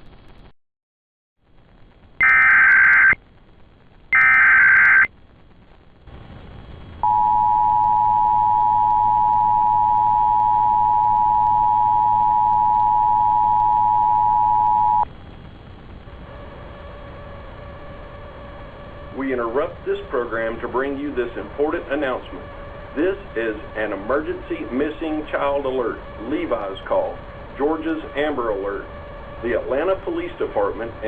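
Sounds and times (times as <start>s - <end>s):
faint low hum: 1.4s - 31.0s
screeching data tones: 2.2s - 3.2s, 4.1s - 5.1s, 7.0s - 15.1s
two-tone attention signal: 7.0s - 15.0s.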